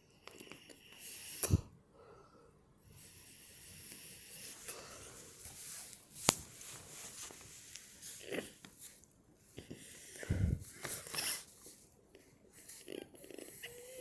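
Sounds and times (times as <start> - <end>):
heavy breathing: 1.4 - 5.9, 9.6 - 11.5.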